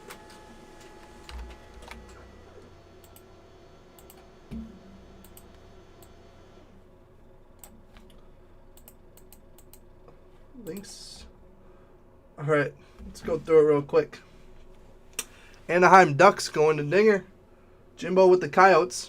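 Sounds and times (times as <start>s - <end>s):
low thumps: 4.4s - 5.2s.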